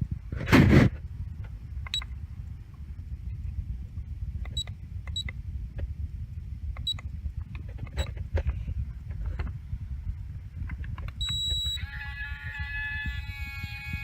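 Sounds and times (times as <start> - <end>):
keypad beeps: 4.5 - 5.3, 11.2 - 11.8.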